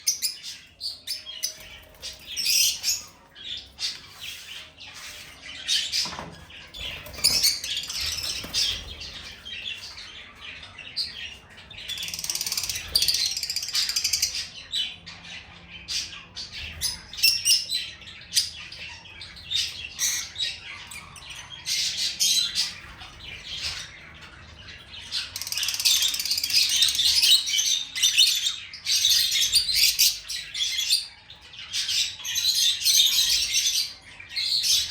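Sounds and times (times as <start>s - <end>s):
bird chirping and squawking: 0.0s - 34.9s.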